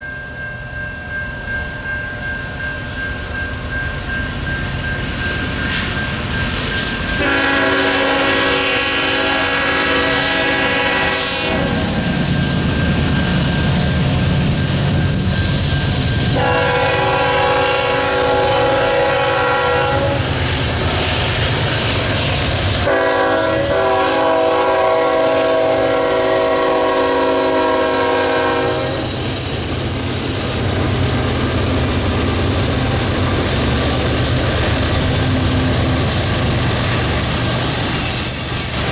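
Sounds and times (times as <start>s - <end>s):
diesel locomotive rumble: 3.2s - 38.9s
locomotive air horn blasts: 7.2s - 12.0s, 16.3s - 20.3s, 22.8s - 29.1s.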